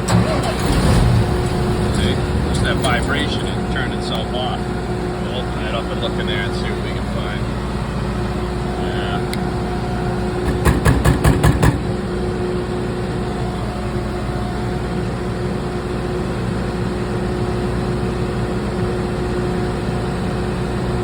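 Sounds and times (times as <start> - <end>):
engine running: 0.0 - 21.0
quick knocks: 10.4 - 11.9.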